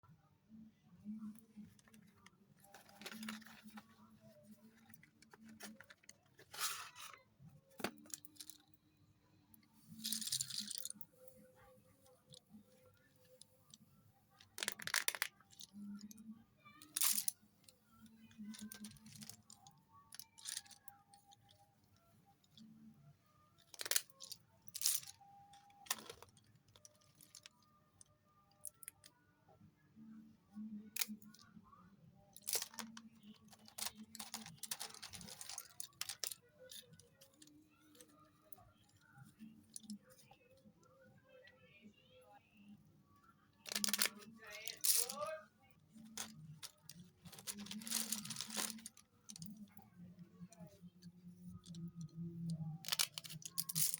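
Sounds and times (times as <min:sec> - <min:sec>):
slate pencils snapping and clinking: 0:18.5 - 0:20.8, 0:23.7 - 0:25.2, 0:25.8 - 0:26.4, 0:32.4 - 0:37.5, 0:43.7 - 0:45.3, 0:46.2 - 0:49.5, 0:52.8 - 0:53.9.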